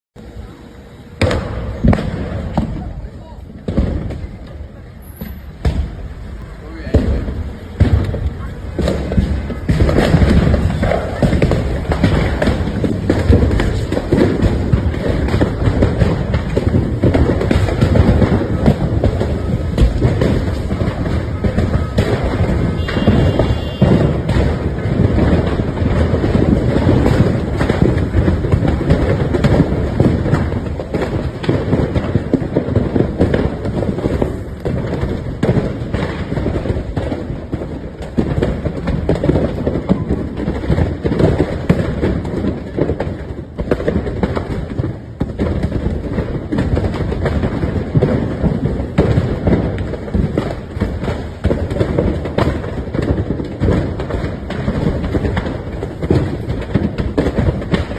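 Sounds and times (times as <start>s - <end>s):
low rumble of fire: 0.2s - 57.9s
sharp pops and bangs: 0.2s - 57.9s.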